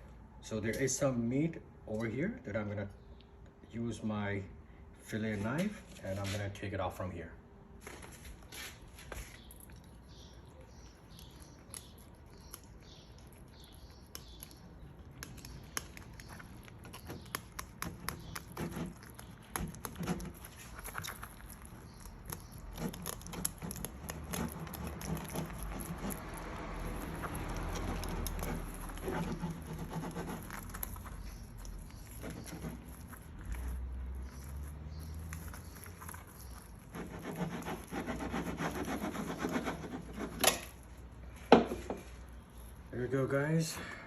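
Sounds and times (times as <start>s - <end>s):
blade clicking and scraping on bones: 9.8s - 40.8s
knife cutting through fish: 15.2s - 20.5s, 22.3s - 26.3s.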